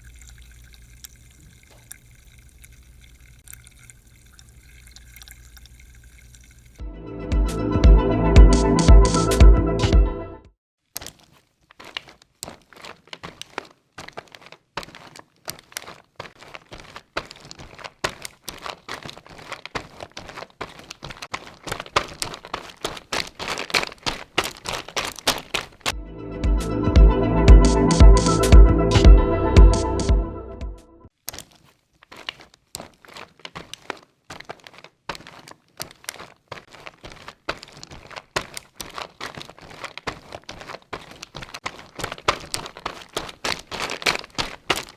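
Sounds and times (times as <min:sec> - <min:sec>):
music: 0:06.8 - 0:10.5, 0:26.0 - 0:31.1
crinkling and crunching: 0:10.8 - 0:25.9, 0:31.1 - 0:44.9.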